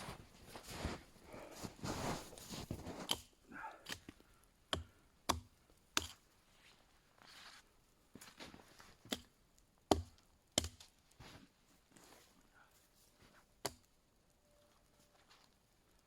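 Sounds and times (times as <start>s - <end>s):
soft scuffing: 0.0s - 3.1s, 8.2s - 9.0s
axe chopping wood: 3.0s - 6.2s, 9.9s - 10.9s.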